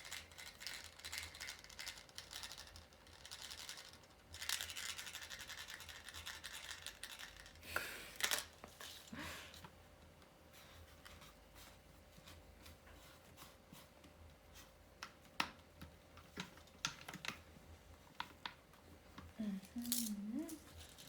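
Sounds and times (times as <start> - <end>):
plastic parts scratching and clicking: 15.8 - 17.5.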